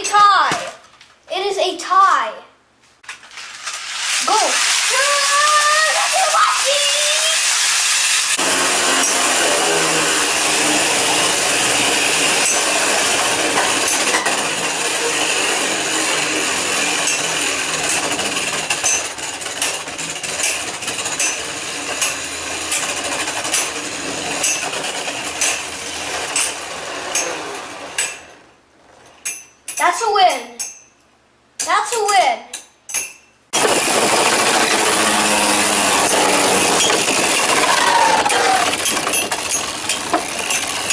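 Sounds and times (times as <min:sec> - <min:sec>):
spinning tops whirring: 0:03.1 - 0:28.4, 0:33.6 - 0:40.9.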